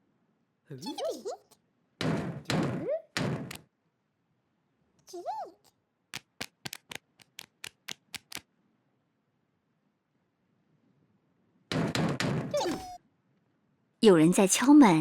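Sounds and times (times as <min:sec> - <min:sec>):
rapid knocking on a door: 0:02.0 - 0:03.6, 0:11.7 - 0:12.6.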